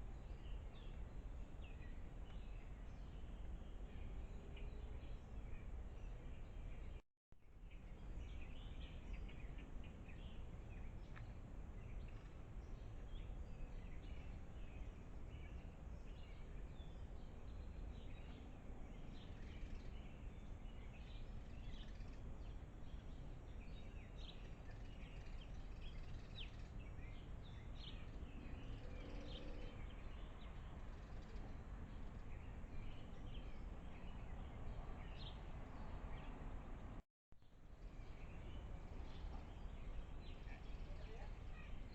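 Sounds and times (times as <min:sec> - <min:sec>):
bird chirps: 0:07.7 - 0:36.4.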